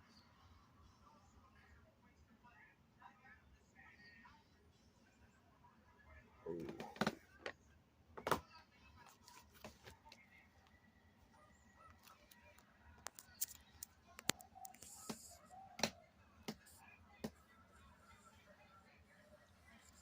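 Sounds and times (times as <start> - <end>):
charger and cable clicks and taps: 12.1 - 15.2.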